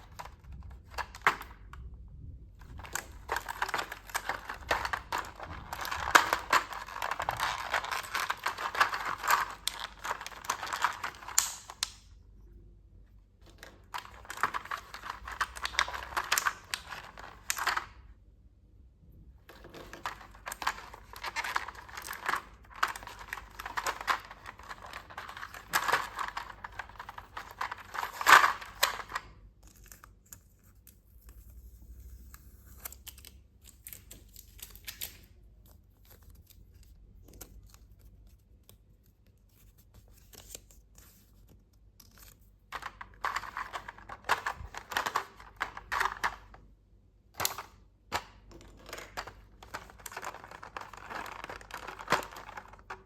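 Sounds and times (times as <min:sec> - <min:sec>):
packaging crinkling and tearing: 0:00.0 - 0:01.7, 0:02.6 - 0:12.0, 0:13.5 - 0:18.0, 0:19.6 - 0:30.6, 0:47.4 - 0:53.0.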